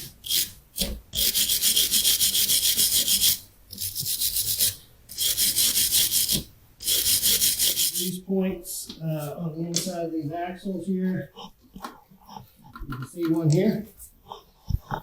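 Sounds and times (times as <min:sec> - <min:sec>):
scrubbing on a hard surface: 0:00.0 - 0:08.2.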